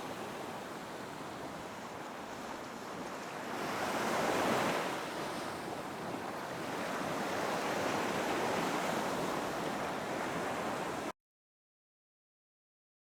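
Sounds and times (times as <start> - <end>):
waves breaking on beach: 0.0 - 11.1.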